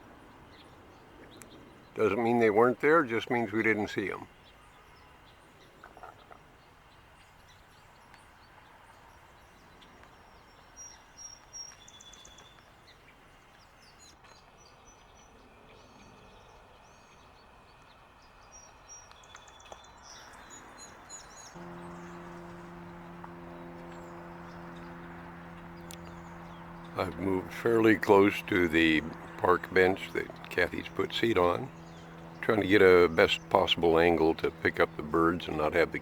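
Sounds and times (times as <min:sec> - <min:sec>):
faint outdoor background noise: 0:00.0 - 0:36.0
bird chirps and trills: 0:19.2 - 0:36.0
low hum with even tones: 0:20.3 - 0:36.0.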